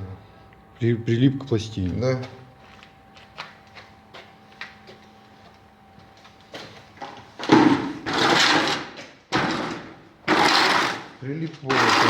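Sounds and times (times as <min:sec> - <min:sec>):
loud scraping rasping noise: 0:08.0 - 0:08.9, 0:10.3 - 0:11.1, 0:11.7 - 0:12.0.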